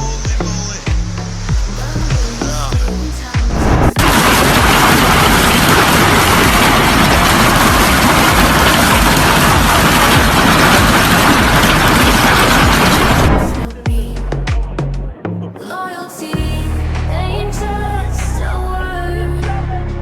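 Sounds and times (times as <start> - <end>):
low rumble: 0.0 - 15.2
loud rushing noise: 1.7 - 13.7.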